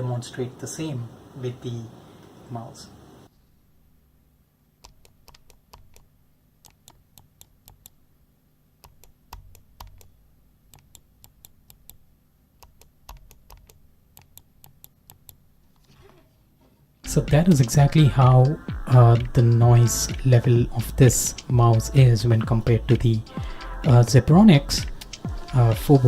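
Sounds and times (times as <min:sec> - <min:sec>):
mouse buttons clicking: 0:04.8 - 0:08.0, 0:08.8 - 0:10.1, 0:10.7 - 0:12.0, 0:12.6 - 0:15.4.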